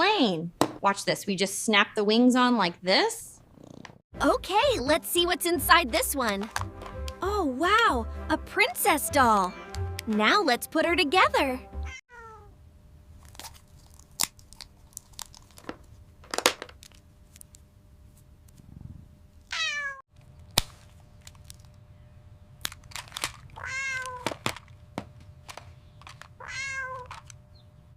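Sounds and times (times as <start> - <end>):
cat meowing: 11.9 - 12.5, 19.5 - 20.0, 23.6 - 24.2, 26.4 - 27.1
plastic toy pieces clicking: 22.6 - 24.7, 27.0 - 27.4.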